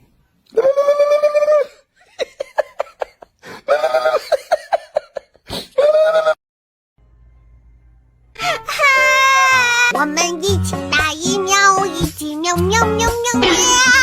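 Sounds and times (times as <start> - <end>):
high childlike voice calling: 8.4 - 10.0, 13.2 - 14.0.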